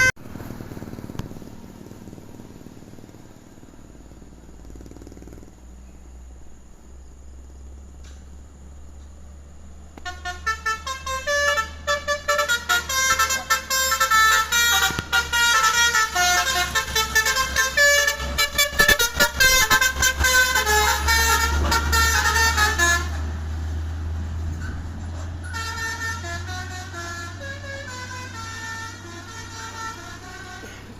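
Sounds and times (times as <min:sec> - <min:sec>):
multi-tone musical truck horn: 0:00.0 - 0:00.3, 0:10.0 - 0:23.7, 0:25.2 - 0:30.9
low engine rumble: 0:00.0 - 0:30.9.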